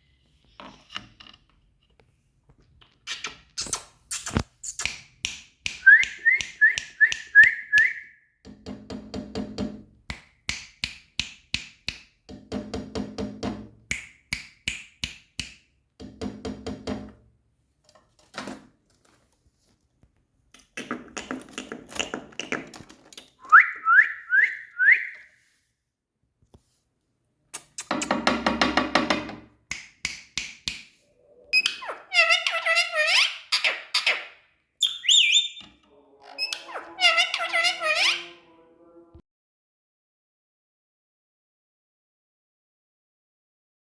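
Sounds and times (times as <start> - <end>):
parrot whistling and chattering: 31.4 - 38.4.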